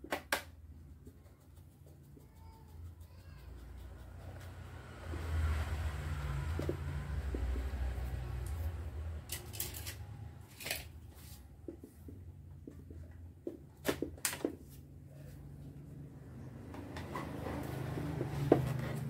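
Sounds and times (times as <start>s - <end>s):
small hard parts clicking: 9.3s - 10.9s.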